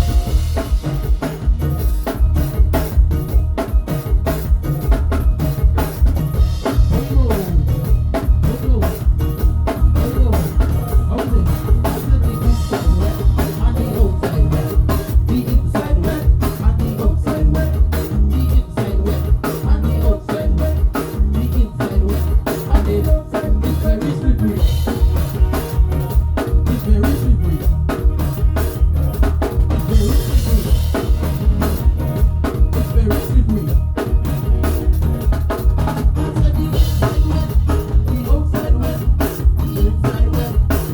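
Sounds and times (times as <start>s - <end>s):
backing music: 0.0s - 40.9s
drum kit playing a beat: 0.0s - 40.9s.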